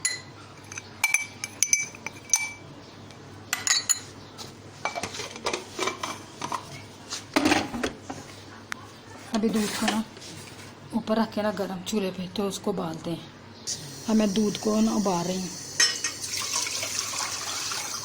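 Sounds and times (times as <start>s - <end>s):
metal spoon clinking on steel: 0.0s - 2.6s, 3.5s - 4.1s.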